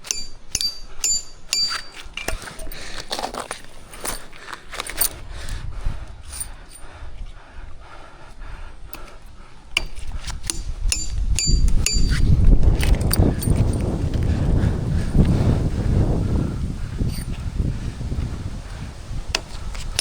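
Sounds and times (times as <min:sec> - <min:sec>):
sharp metallic clinks and knocks: 0:00.0 - 0:05.3, 0:06.2 - 0:06.8, 0:09.0 - 0:14.2, 0:17.0 - 0:17.6
wind buffeting the microphone: 0:02.1 - 0:20.0.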